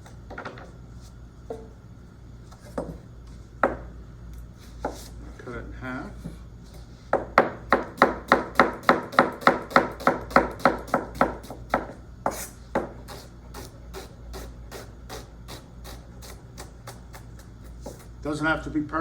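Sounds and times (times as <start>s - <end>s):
knife chopping onion on board: 7.1s - 18.1s.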